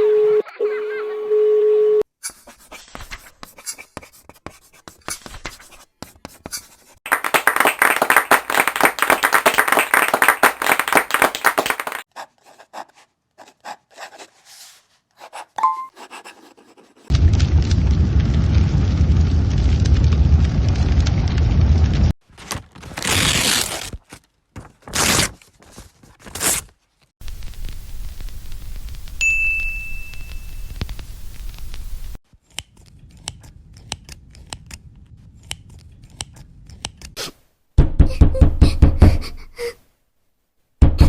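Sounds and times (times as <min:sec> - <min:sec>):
low rumbling noise: 0:17.1 - 0:22.1
clicks and scratching: 0:30.7 - 0:37.2.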